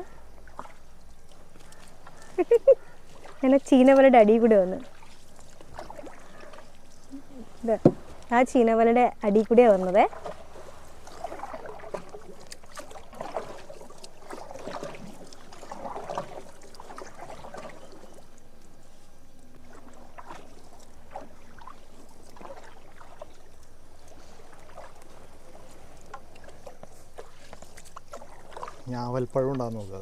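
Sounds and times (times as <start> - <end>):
oars swishing through water: 0.0 - 30.0
light knocks on wooden boat: 7.8 - 8.3.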